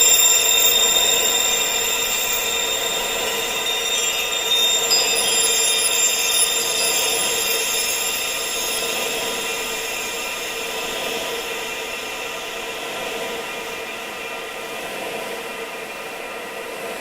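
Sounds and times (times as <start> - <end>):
high-pitched ringing tones: 0.0 - 14.8
wind-like hiss: 0.0 - 17.0.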